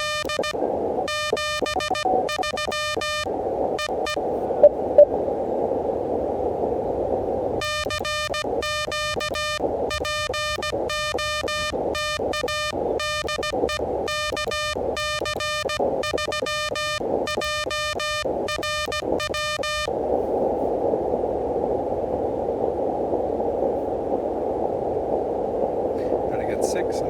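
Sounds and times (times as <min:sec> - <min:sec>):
morse code tone: 0:00.0 - 0:05.1, 0:07.6 - 0:19.9
radio band hiss: 0:07.6 - 0:20.6, 0:26.0 - 0:27.0.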